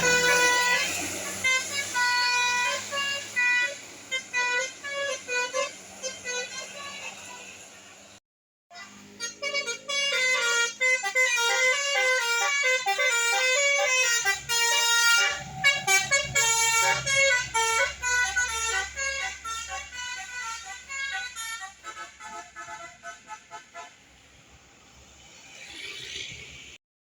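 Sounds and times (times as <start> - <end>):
multi-tone bus air horn melody: 0.0 - 8.0, 8.7 - 24.3
low engine rumble: 0.0 - 8.2, 8.9 - 24.7.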